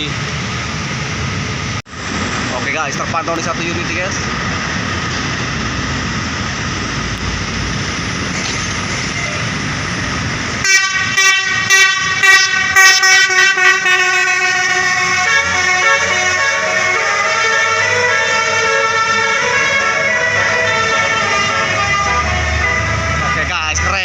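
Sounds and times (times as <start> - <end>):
road traffic noise: 0.0 - 24.0
bus horn playing a tune: 10.6 - 23.4.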